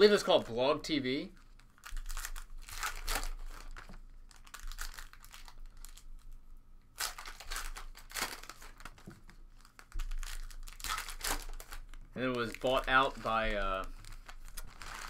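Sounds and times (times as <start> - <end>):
card pack wrappers crinkling: 1.4 - 6.3, 7.0 - 15.0
cards rustling: 7.0 - 15.0.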